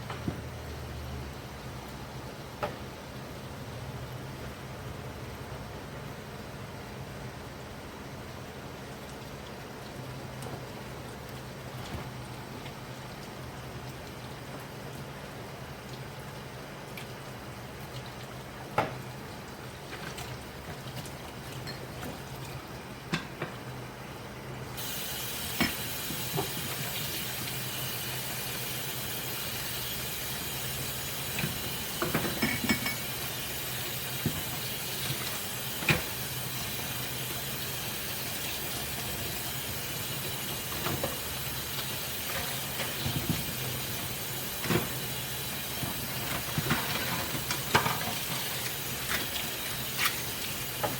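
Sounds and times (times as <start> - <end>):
tap water running: 8.6 - 23.8, 24.6 - 50.9
dishes clinking: 32.0 - 33.2.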